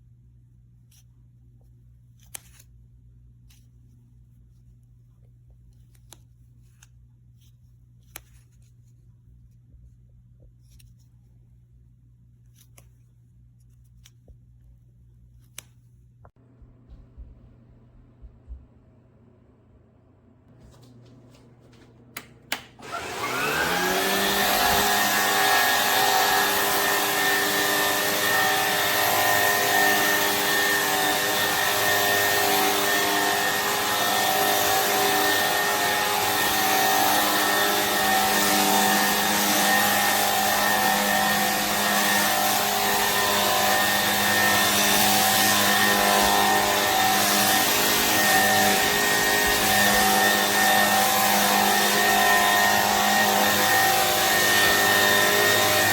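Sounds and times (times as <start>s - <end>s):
vacuum cleaner motor whine: 20.7s - 55.9s
vacuum cleaner switch clicks: 21.7s - 24.6s.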